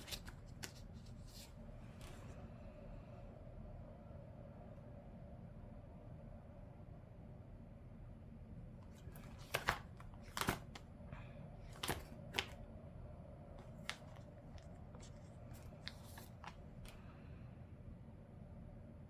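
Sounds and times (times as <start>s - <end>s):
paper rustling: 0.0s - 2.4s, 8.8s - 10.8s, 11.6s - 12.6s, 13.6s - 17.0s
light taps of paper sheets: 8.8s - 10.8s, 11.6s - 12.6s, 13.6s - 17.0s.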